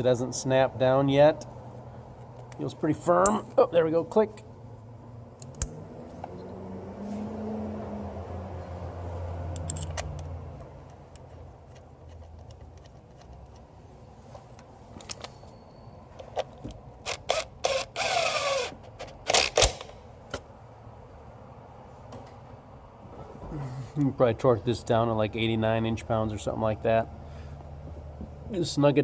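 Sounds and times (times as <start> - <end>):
metallic clicks and rattles of tools: 9.5 - 13.7.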